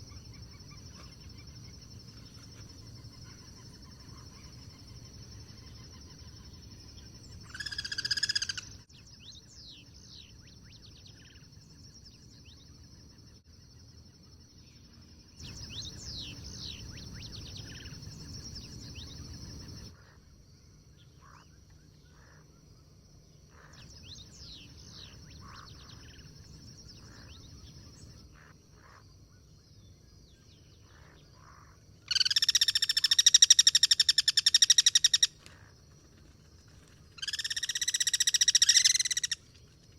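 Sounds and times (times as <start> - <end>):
cuckoo calls: 37.2 - 39.4.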